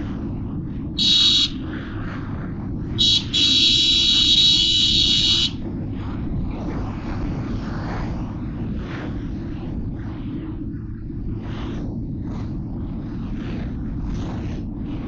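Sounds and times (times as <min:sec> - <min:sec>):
motorcycle engine rumble: 0:00.0 - 0:15.0
wind noise: 0:00.0 - 0:15.0
high-pitched vehicle horn honking: 0:01.0 - 0:01.6, 0:03.0 - 0:05.6.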